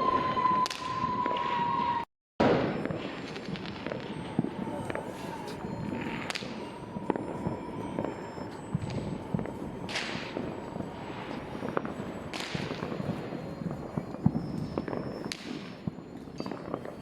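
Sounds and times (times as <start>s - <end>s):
fireworks and firecrackers popping: 0.0s - 17.0s.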